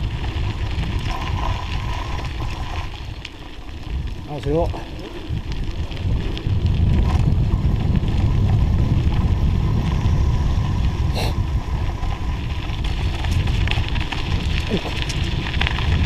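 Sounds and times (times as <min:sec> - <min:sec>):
bike tyres rolling on snow: 0:00.0 - 0:16.0
wind buffeting microphone: 0:00.0 - 0:16.0.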